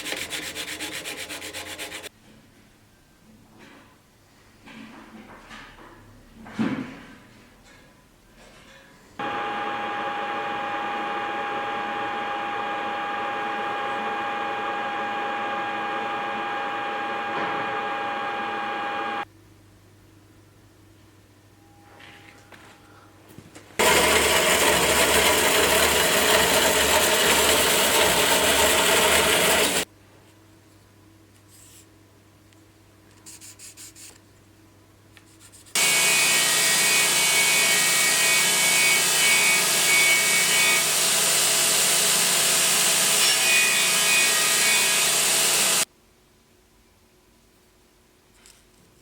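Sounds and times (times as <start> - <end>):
power tool grinding: 23.8 - 29.9, 35.8 - 45.9.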